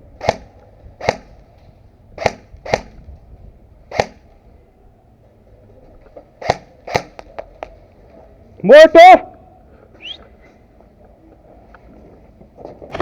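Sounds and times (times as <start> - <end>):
airsoft gun shots: 0.2 - 1.4, 2.2 - 3.0, 3.9 - 4.3, 6.4 - 7.4.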